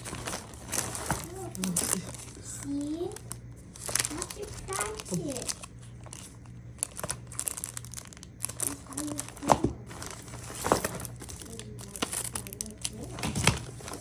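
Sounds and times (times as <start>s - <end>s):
packaging crinkling and rustling: 0.0s - 14.0s.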